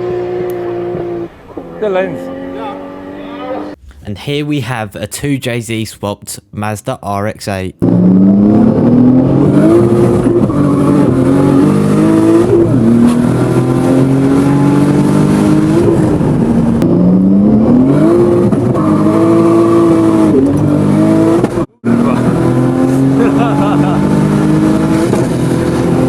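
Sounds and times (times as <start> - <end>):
car engine revving: 7.8 - 26.0.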